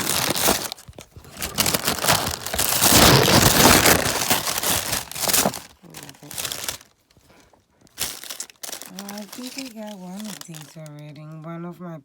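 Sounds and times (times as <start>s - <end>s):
packaging crinkling and rustling: 0.0s - 11.5s.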